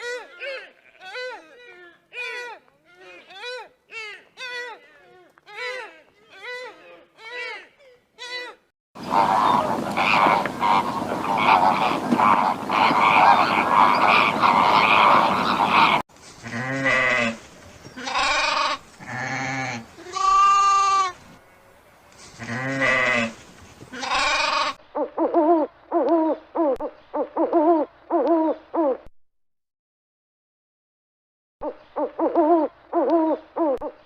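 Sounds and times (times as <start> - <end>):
many animals calling: 9.0 - 21.2, 22.2 - 29.0
drawn-out pitched animal calls: 9.0 - 27.9
short high animal calls: 22.4 - 29.0.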